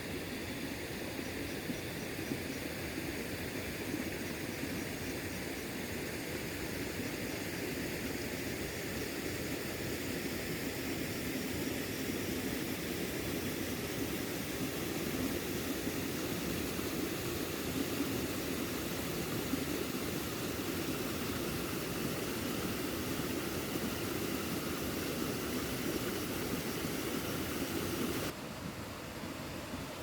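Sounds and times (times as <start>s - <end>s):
river rushing and gurgling: 12.2s - 30.0s.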